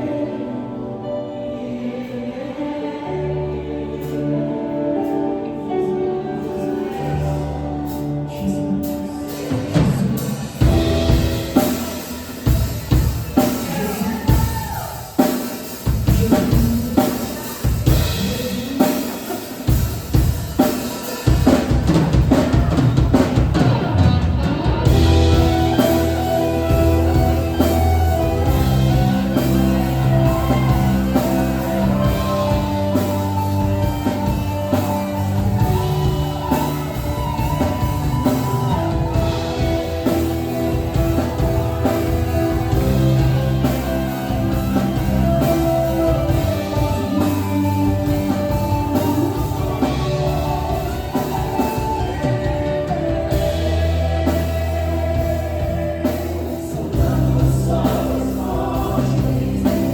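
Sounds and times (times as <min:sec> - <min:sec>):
worship band playing: 0:00.0 - 0:59.9
drum kit playing: 0:06.5 - 0:59.9
sustained keyboard chords: 0:22.1 - 0:59.9
held bass notes: 0:22.4 - 0:59.9.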